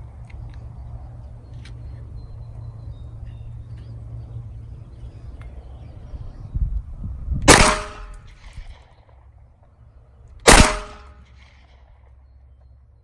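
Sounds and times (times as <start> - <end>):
pistol gunshot: 7.5 - 8.2, 10.5 - 11.6.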